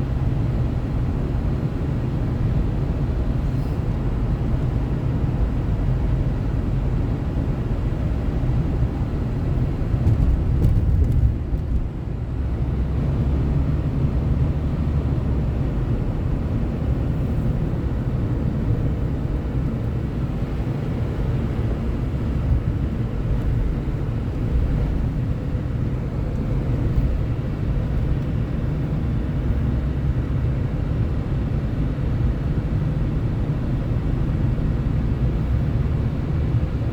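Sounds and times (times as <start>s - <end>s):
car driving rumble: 0.0s - 36.9s.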